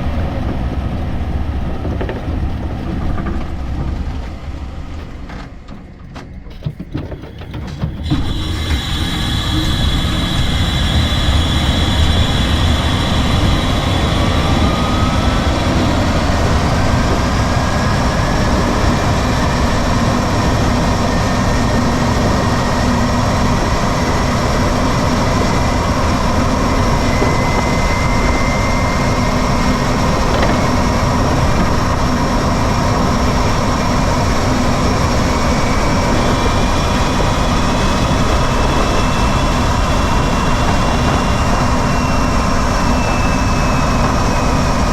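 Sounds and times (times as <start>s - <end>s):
low rumble of road and wind: 0.0s - 8.2s
electric motor whine: 8.0s - 44.9s.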